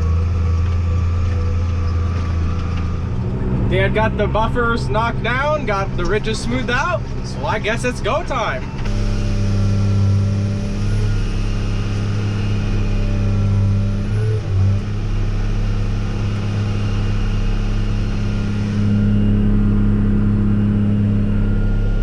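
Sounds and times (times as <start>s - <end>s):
combine harvester engine running: 0.0s - 22.0s.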